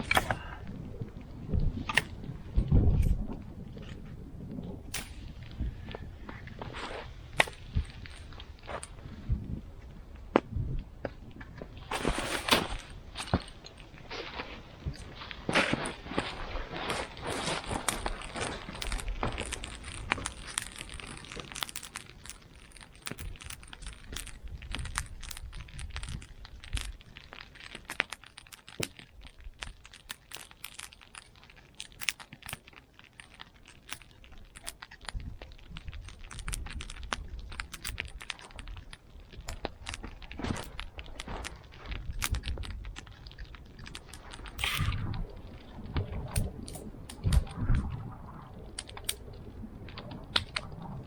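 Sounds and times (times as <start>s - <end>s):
campfire crackling: 0.0s - 51.0s
rustling shuffle: 11.4s - 28.7s.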